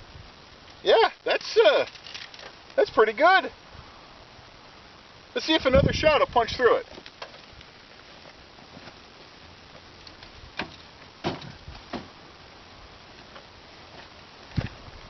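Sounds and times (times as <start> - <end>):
faint background hiss: 0.0 - 15.0.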